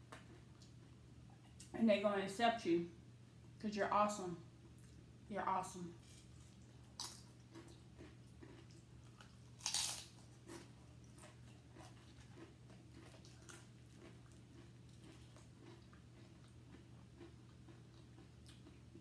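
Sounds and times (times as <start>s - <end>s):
faint steady hum: 0.0s - 19.0s
crunching tortilla chips: 6.0s - 18.9s.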